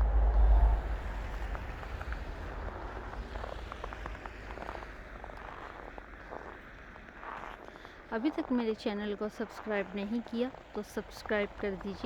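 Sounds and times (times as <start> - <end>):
wind buffeting microphone: 0.0 - 6.1.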